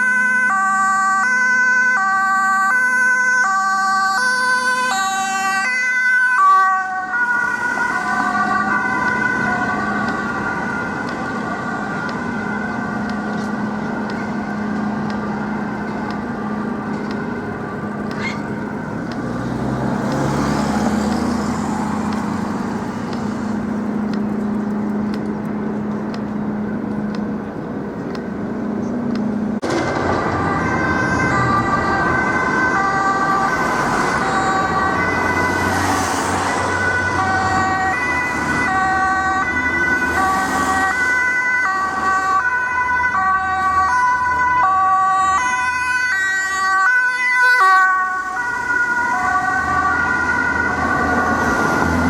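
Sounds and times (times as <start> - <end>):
two-tone ambulance siren: 0.0 - 27.2, 29.6 - 52.0
traffic noise: 0.0 - 52.0
engine hum: 6.9 - 44.6, 45.2 - 52.0.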